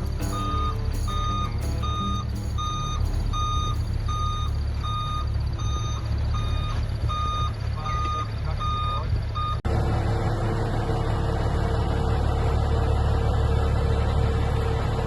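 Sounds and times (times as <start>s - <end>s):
reversing alarm beeping: 0.0s - 9.6s
low engine rumble: 0.0s - 15.0s.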